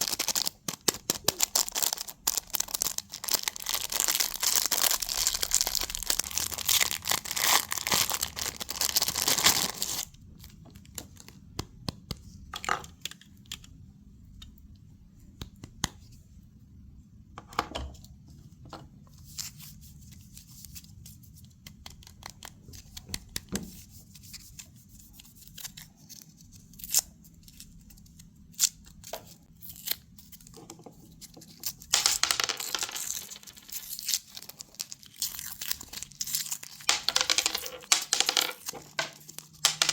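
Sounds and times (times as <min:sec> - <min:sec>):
candy wrapper tearing and crinkling: 0:00.0 - 0:11.0, 0:25.1 - 0:39.9.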